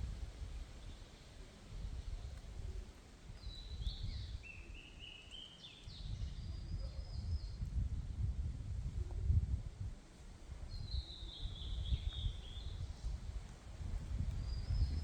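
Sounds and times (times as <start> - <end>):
wind rumbling on microphone: 0.0 - 4.8, 5.8 - 15.0
songbird singing: 3.4 - 6.7, 10.7 - 13.1.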